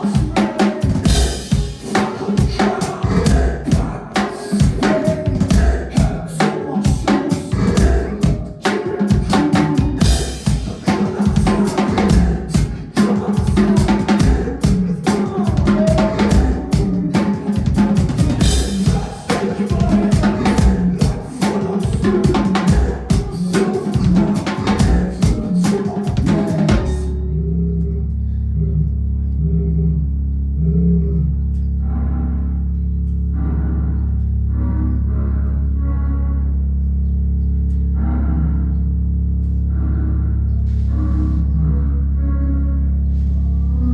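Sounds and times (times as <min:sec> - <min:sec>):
fast drum-kit playing: 0:00.0 - 0:27.1
live band music: 0:00.0 - 0:27.1
low bass drone: 0:01.0 - 0:08.6, 0:09.2 - 0:43.9.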